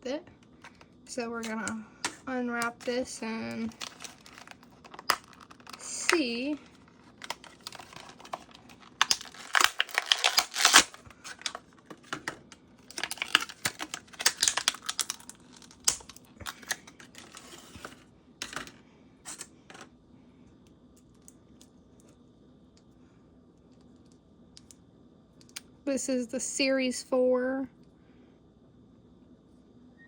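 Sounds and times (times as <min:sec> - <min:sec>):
wrapper crinkling and rustling: 0:03.6 - 0:18.0
clicks and crackles: 0:03.6 - 0:19.5.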